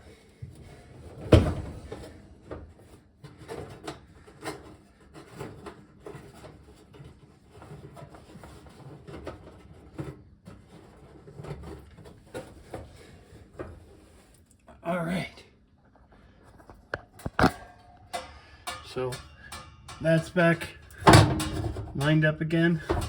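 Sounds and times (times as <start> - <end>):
metal parts clunking and scraping: 16.5 - 23.0.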